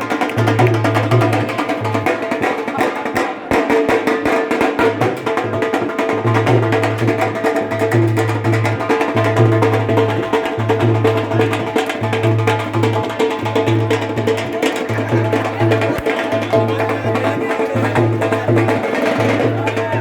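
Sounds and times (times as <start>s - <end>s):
lively music with fast percussion: 0.0s - 20.0s.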